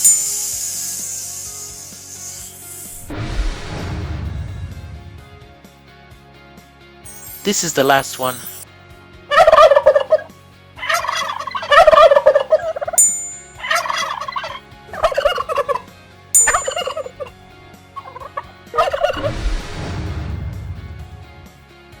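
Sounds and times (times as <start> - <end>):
high chimes: 0.0 - 1.0, 7.1 - 8.6, 12.9 - 15.2, 16.4 - 17.4
animal rattling calls: 9.3 - 17.3, 18.0 - 19.3.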